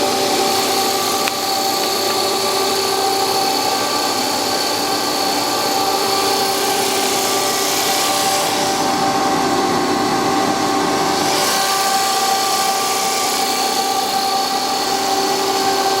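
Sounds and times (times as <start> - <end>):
drilling machine motors whining: 0.0 - 16.0
hiss: 11.0 - 16.0.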